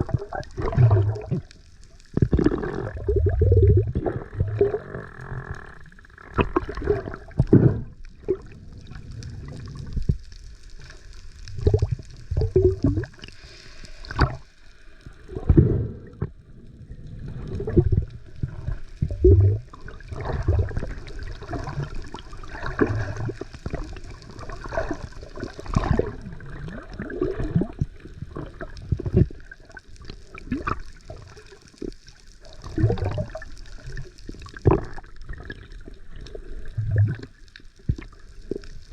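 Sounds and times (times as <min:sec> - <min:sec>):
seawater sloshing and gurgling: 0:00.0 - 0:01.6, 0:02.2 - 0:10.0, 0:17.3 - 0:38.9
water splashes and bubbling: 0:00.0 - 0:38.9.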